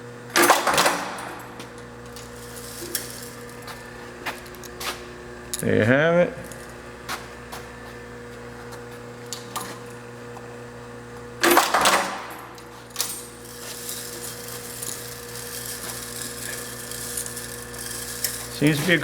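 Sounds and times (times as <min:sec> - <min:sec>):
electric motor hum: 0:01.3 - 0:19.0
loud metallic clatter: 0:13.1 - 0:19.0.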